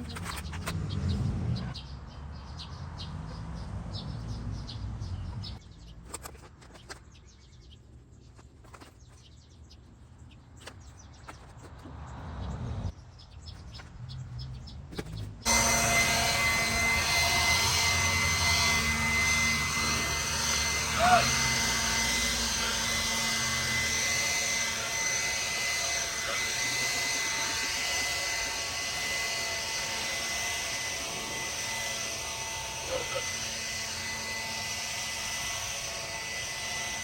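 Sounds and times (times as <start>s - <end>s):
birds chirping: 0.0s - 37.0s
passing vehicles: 0.1s - 5.8s, 11.7s - 13.2s
steady mechanical hum: 15.4s - 37.0s
whining tones: 15.5s - 37.0s.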